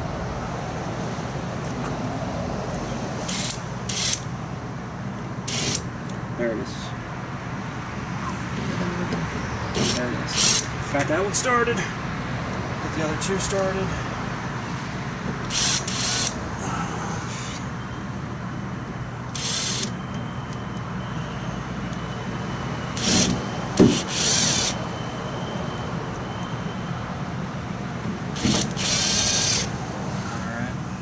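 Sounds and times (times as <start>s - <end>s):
screws being driven: 3.3s - 4.3s, 5.5s - 5.8s, 9.7s - 10.7s, 15.5s - 16.4s, 19.3s - 20.0s, 23.0s - 24.8s, 28.4s - 29.7s.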